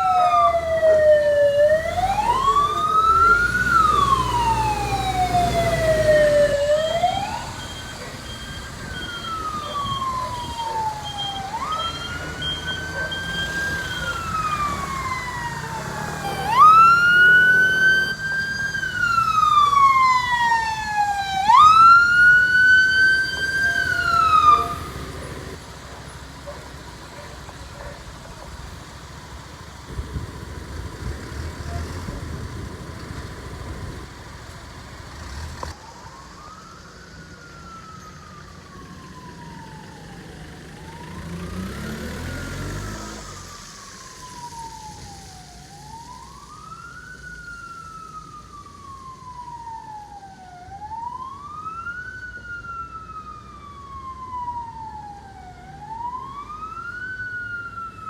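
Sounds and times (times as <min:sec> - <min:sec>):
fire engine siren wailing: 0:00.0 - 0:34.6, 0:35.6 - 0:58.0
large vehicle engine rumbling: 0:00.0 - 0:50.5
engine revving: 0:00.3 - 0:22.2, 0:30.0 - 0:34.2, 0:40.9 - 0:44.1.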